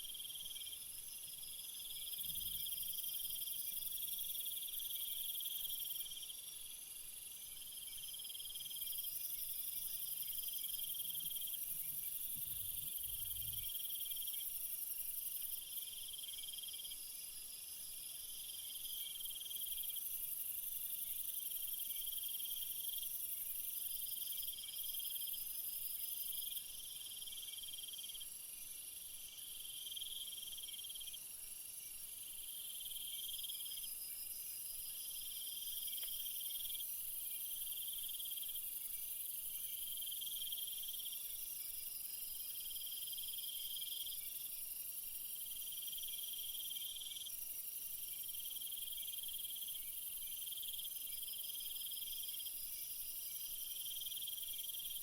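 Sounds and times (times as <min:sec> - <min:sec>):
insects pulsing trills: 0:00.0 - 0:55.0
high-pitched insect hiss: 0:18.4 - 0:55.0.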